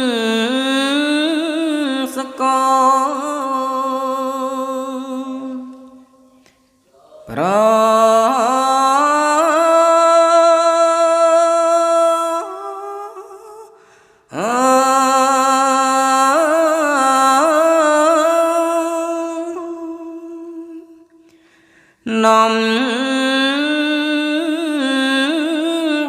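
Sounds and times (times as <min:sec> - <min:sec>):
monk chanting solo: 0:00.0 - 0:13.7.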